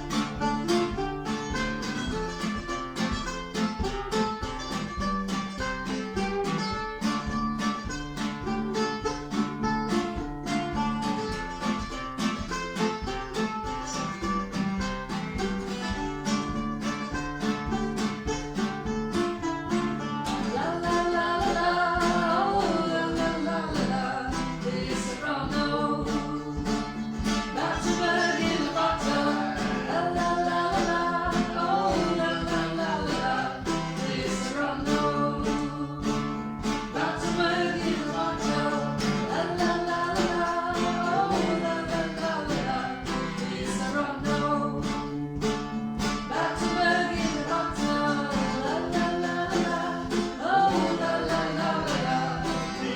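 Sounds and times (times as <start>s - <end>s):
mandolin playing: 0.0s - 52.9s
strummed guitar: 0.0s - 52.9s
person singing: 19.6s - 52.9s.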